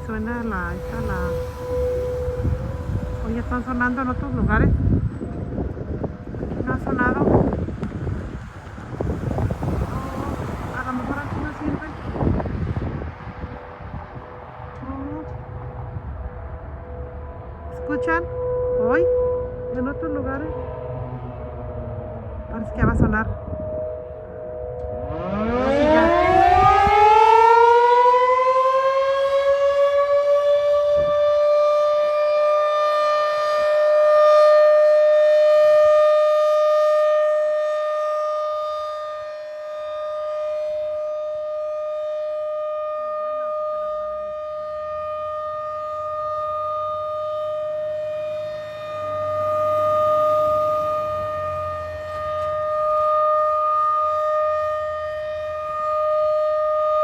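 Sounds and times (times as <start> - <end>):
rotating warning siren winding up: 24.7 - 57.0.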